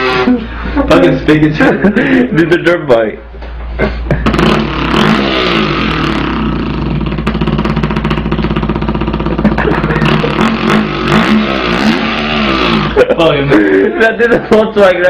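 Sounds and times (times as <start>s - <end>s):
man imitating engine with mouth: 0.0s - 0.5s, 3.8s - 13.1s.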